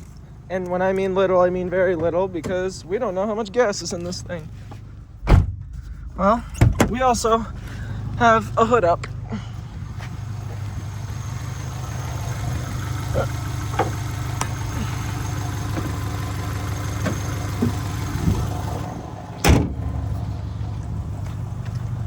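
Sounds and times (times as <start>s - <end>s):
car engine idling: 0.0s - 22.0s
loud slam: 5.2s - 5.6s.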